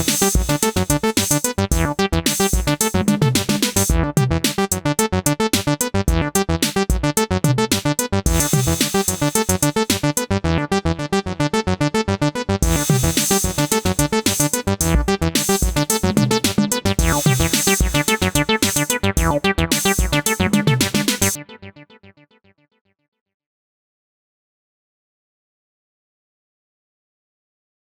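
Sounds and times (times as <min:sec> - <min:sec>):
hi-hat-like hiss: 0:00.0 - 0:03.9, 0:08.3 - 0:10.2, 0:12.6 - 0:21.4
steady kick drum: 0:00.0 - 0:04.8, 0:05.6 - 0:10.2, 0:12.6 - 0:21.4
acid synth bassline: 0:00.0 - 0:21.7.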